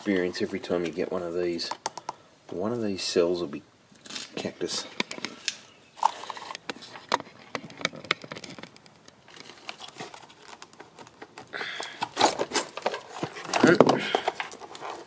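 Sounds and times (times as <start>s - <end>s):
hands handling plastic parts: 4.0s - 15.0s
scraping rustle: 4.0s - 15.0s.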